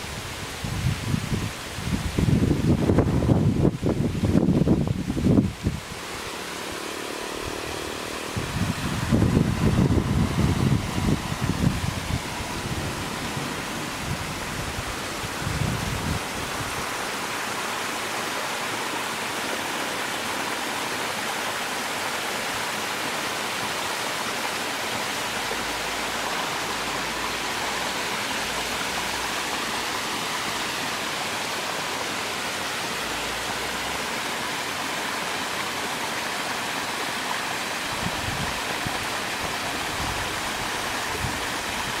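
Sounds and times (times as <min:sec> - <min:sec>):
wind rumble on microphone: 0:00.0 - 0:06.3, 0:07.4 - 0:17.2, 0:37.9 - 0:42.0
waterfall rushing: 0:00.0 - 0:42.0.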